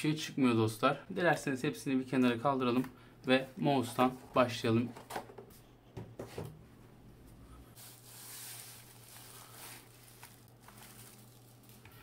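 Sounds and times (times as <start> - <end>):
plastic bag rustling: 7.7 - 12.0.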